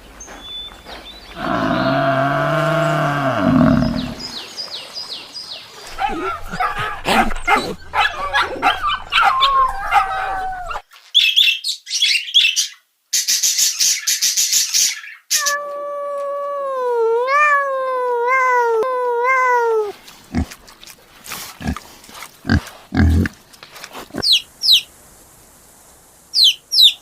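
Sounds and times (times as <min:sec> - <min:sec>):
animal whine: 0:01.4 - 0:04.2
low grunts: 0:01.4 - 0:04.2, 0:05.9 - 0:07.9.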